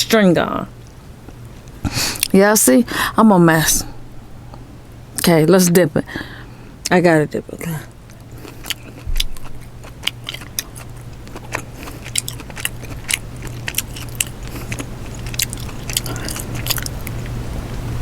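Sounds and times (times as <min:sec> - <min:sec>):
person biting and chewing: 0:08.1 - 0:17.2.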